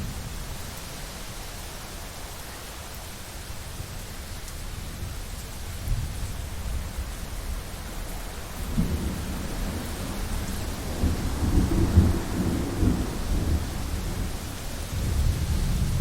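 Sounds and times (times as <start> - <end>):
steady rain: 0.0 - 16.0
thunder rumbling: 8.6 - 16.0.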